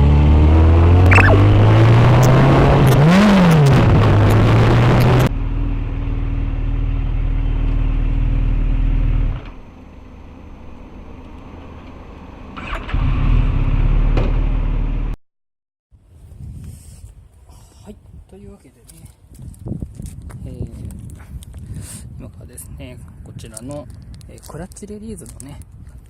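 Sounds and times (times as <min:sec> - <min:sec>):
engine revving blip: 0:00.9 - 0:05.3.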